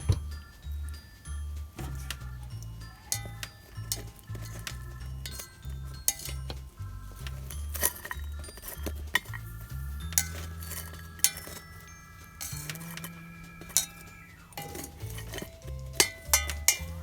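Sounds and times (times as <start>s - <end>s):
background music with bass line: 0.0s - 17.0s
metal pot and lid clinking: 0.0s - 17.0s.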